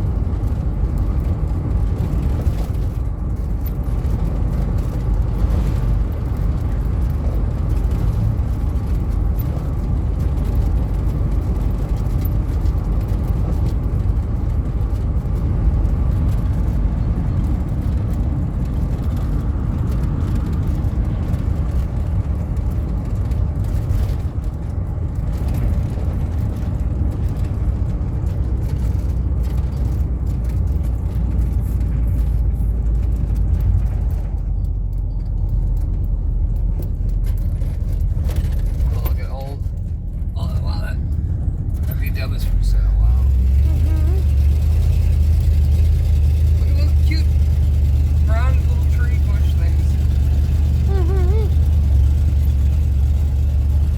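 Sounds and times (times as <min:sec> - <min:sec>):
car engine rumble: 0:00.0 - 0:53.9
road noise: 0:00.0 - 0:53.9.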